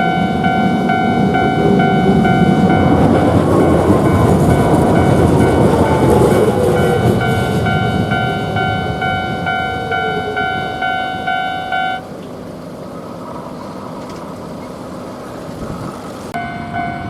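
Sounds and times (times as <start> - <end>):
level crossing warning bell: 0.0 - 12.1, 16.3 - 17.0
streetcar rumbling on rails: 0.0 - 17.0.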